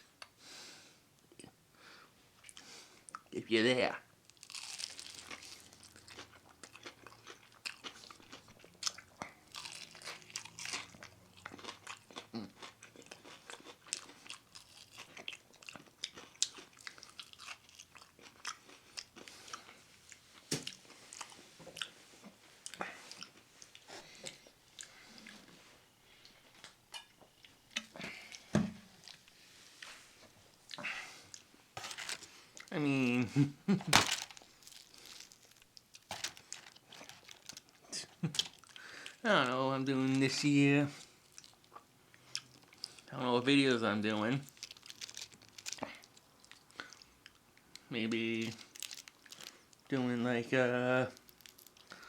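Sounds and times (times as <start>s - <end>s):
chewing crispy chicken: 4.3s - 25.5s, 33.4s - 39.2s, 40.3s - 43.1s, 44.4s - 50.0s, 51.1s - 52.0s.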